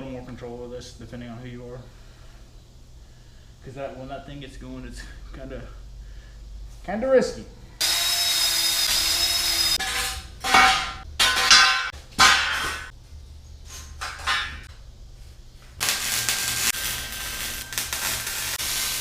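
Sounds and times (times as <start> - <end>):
sharp metallic clanks: 9.8 - 12.9
steady hiss: 13.8 - 19.0.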